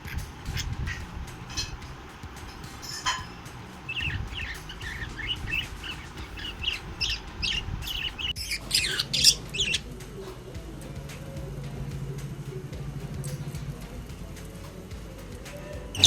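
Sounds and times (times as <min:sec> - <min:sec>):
budgerigars chattering: 0:00.0 - 0:10.2.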